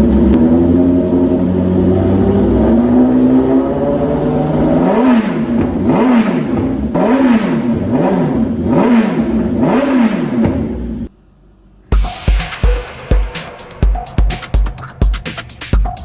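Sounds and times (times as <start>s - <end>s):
motorcycle engine revving: 0.0s - 11.1s.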